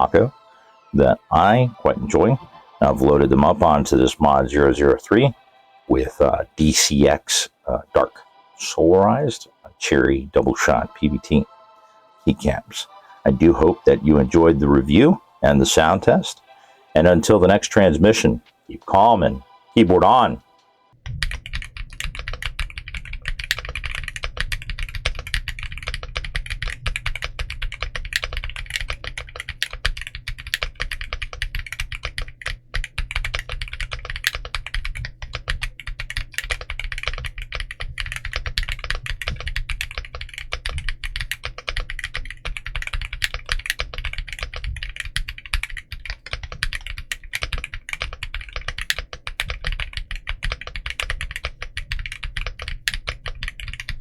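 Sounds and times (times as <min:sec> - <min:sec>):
fast typing on mechanical keyboard: 0:21.1 - 0:54.0.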